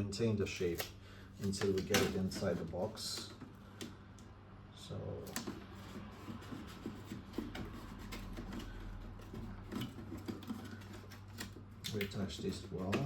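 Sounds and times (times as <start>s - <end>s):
tape on cardboard clicks and rustles: 5.3s - 13.0s.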